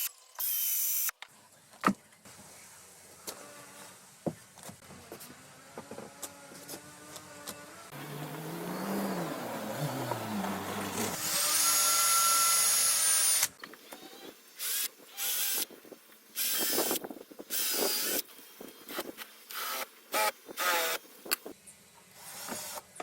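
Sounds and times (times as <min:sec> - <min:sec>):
power drill whining: 0:08.5 - 0:15.7, 0:16.4 - 0:18.2, 0:22.2 - 0:22.9.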